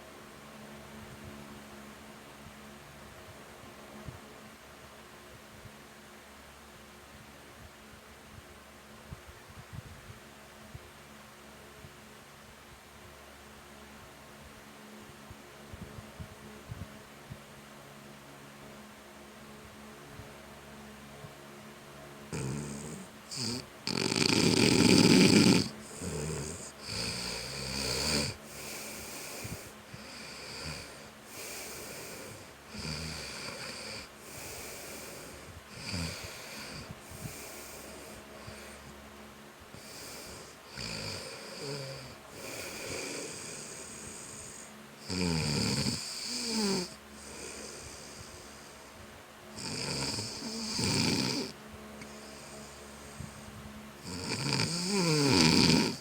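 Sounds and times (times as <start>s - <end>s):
person snoring: 22.3s - 38.9s, 39.7s - 48.9s, 49.6s - 53.2s, 54.0s - 56.0s.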